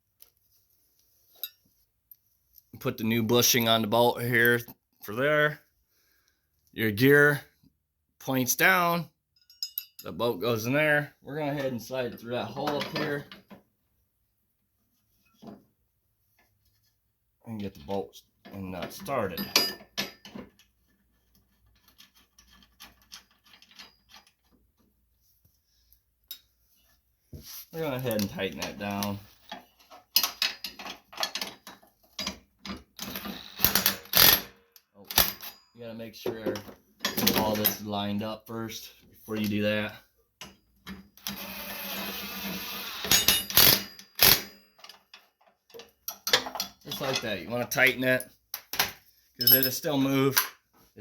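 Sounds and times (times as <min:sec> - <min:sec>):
power tool motor whirring: 0:33.1 - 0:34.3.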